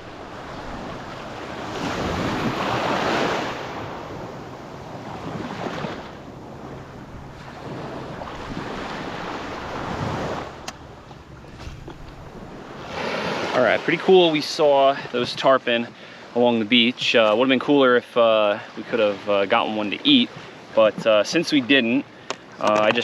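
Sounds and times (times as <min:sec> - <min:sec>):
wind buffeting microphone: 0:00.0 - 0:14.4
waves washing on beach: 0:00.0 - 0:17.8.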